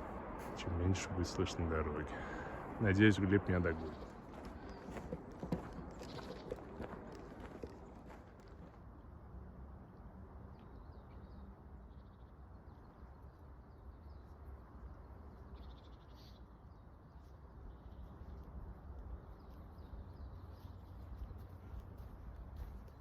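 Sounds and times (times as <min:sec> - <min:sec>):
distant road traffic rumble: 0:00.0 - 0:10.4.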